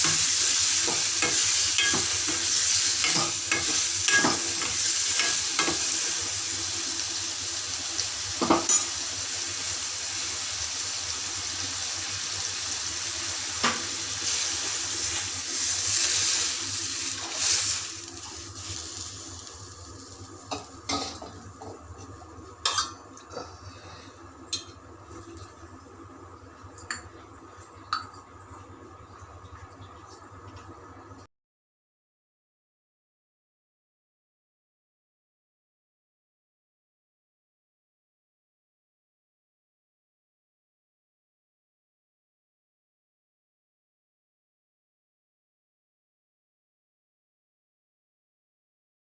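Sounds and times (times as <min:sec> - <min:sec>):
food sizzling in hot oil: 0:00.0 - 0:23.0
spoon knocking against pan: 0:03.1 - 0:04.4.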